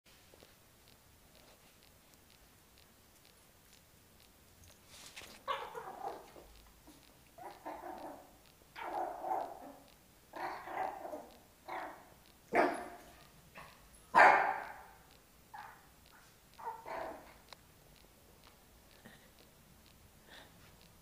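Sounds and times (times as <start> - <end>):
puppy barking and yelping: 5.4 - 17.4.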